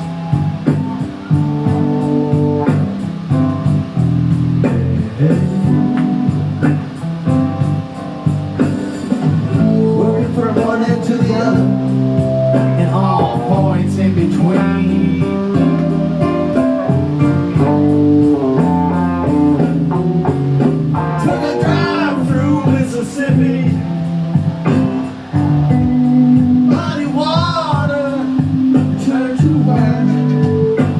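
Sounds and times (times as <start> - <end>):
bass: 0.0 - 30.9
blues guitar: 0.0 - 30.9
person singing: 5.2 - 6.3, 9.6 - 12.0, 12.6 - 16.6, 21.2 - 24.1, 26.7 - 30.9.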